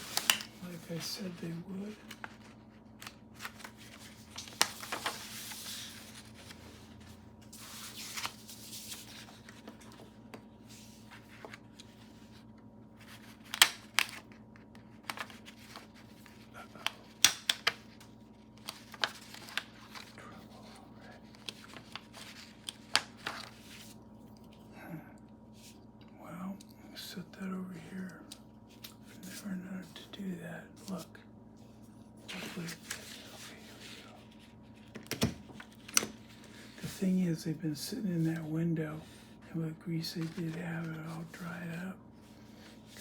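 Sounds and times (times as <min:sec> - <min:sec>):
paper rustling: 0:00.0 - 0:24.0, 0:32.2 - 0:37.2, 0:40.1 - 0:43.0.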